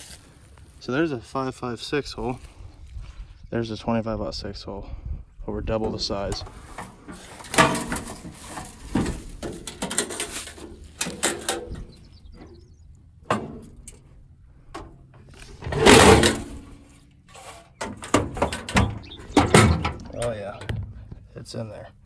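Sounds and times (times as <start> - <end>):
metal toolbox drawers clanking: 5.8 - 12.6, 13.3 - 14.0, 14.8 - 20.6
drawer sliding scrape: 15.4 - 16.7.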